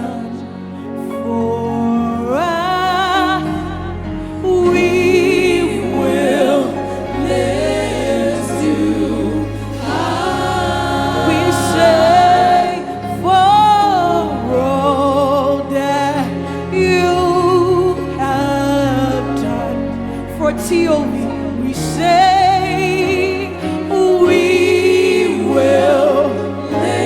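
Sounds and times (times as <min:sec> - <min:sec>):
gospel singing with vibrato: 0:00.0 - 0:27.0
instrumental backing with bass: 0:00.0 - 0:27.0.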